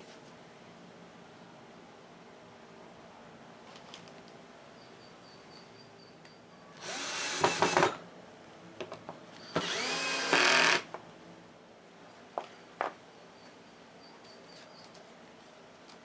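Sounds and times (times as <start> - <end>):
power drill motor whine: 6.8 - 8.0, 9.5 - 10.9.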